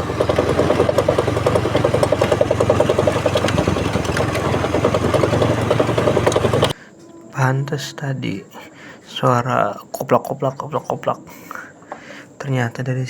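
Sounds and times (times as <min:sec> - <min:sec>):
vehicle engine rattling knock: 0:00.0 - 0:06.8.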